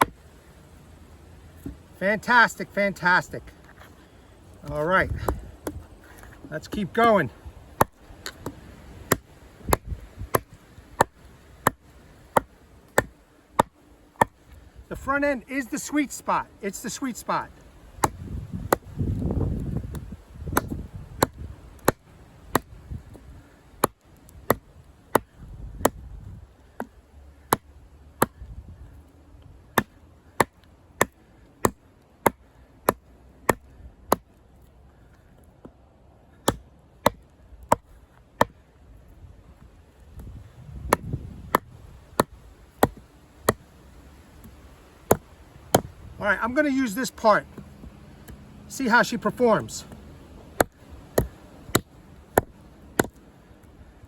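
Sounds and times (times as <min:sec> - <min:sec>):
knife chopping into log: 0:07.8 - 0:14.4, 0:18.0 - 0:22.7, 0:36.4 - 0:38.6, 0:40.8 - 0:43.6, 0:44.4 - 0:45.9, 0:50.6 - 0:53.2.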